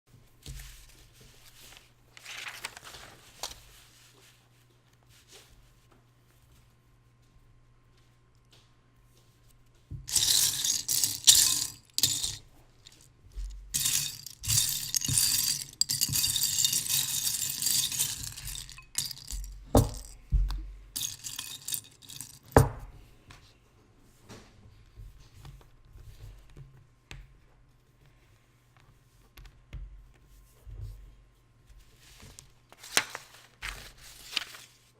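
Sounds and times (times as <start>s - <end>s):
plastic toy bricks rattling: 10.1s - 20.2s, 21.0s - 22.6s.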